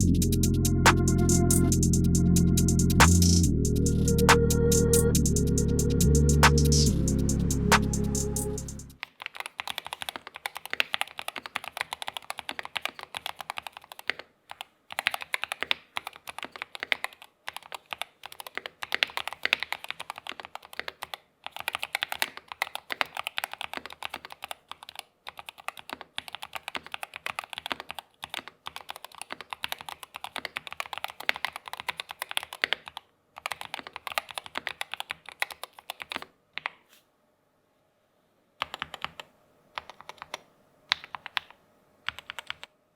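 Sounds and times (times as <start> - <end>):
keyboard typing clatter: 9.0 - 36.8, 38.6 - 42.7.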